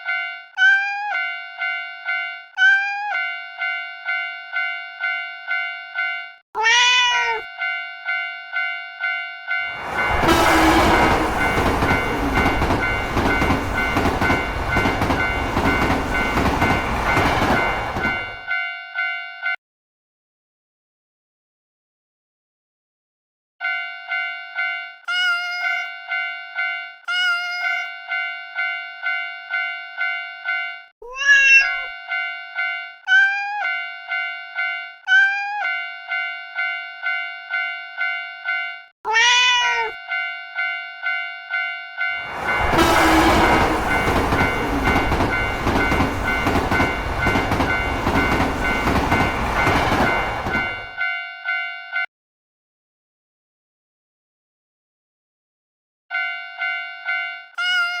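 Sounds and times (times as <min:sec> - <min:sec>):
railroad crossing bell dinging: 0:00.0 - 0:02.6, 0:03.2 - 0:19.6, 0:23.6 - 0:52.1, 0:56.1 - 0:58.0
cartoon cat meowing: 0:00.6 - 0:01.3, 0:02.6 - 0:03.3, 0:06.6 - 0:07.5, 0:25.1 - 0:25.9, 0:27.1 - 0:27.9, 0:31.0 - 0:31.9, 0:33.1 - 0:33.8, 0:35.1 - 0:35.8, 0:39.1 - 0:40.0, 0:57.6 - 0:58.0
train wheels clattering: 0:10.1 - 0:18.3, 0:42.3 - 0:50.8.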